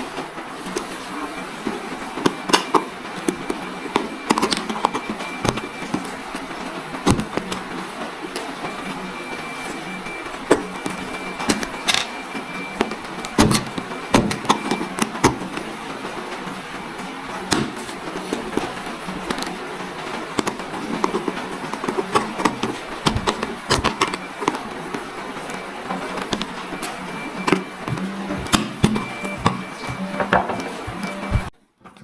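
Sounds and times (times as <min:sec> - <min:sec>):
plastic parts clicking and knocking: 0:02.2 - 0:07.7, 0:10.4 - 0:15.7, 0:17.5 - 0:32.0.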